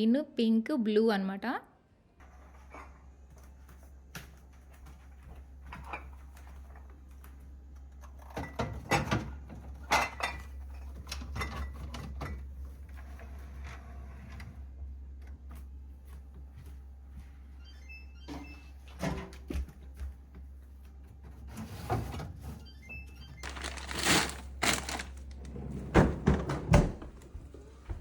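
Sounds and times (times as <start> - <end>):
plastic shelves knocking and clattering: 8.2 - 12.5, 23.4 - 28.0.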